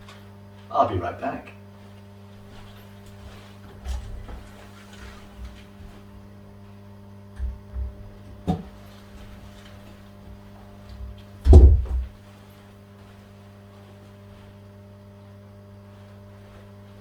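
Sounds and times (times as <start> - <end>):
electrical hum: 0.0 - 17.0
dull thumps: 7.4 - 9.3, 10.3 - 12.2.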